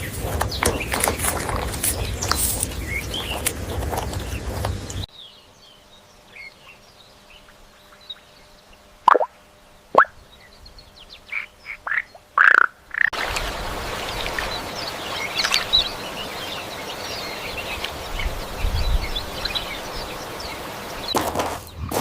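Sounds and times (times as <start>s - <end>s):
high chirps: 9.1s - 9.3s, 10.0s - 10.2s.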